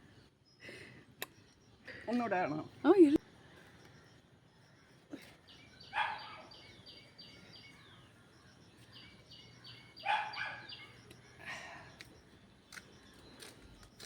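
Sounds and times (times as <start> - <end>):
bird calling: 8.8 - 14.0.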